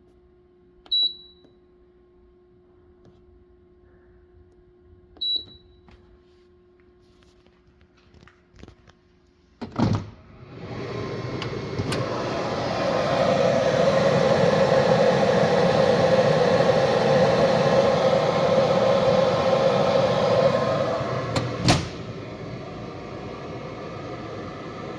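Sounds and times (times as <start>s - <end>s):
keypad beep: 0.9s - 1.4s, 5.2s - 5.8s
machine whirring: 10.4s - 24.9s.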